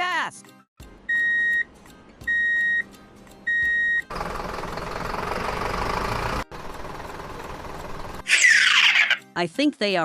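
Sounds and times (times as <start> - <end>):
vehicle reversing alarm beeps: 1.1 - 1.7, 2.3 - 2.9, 3.5 - 4.1.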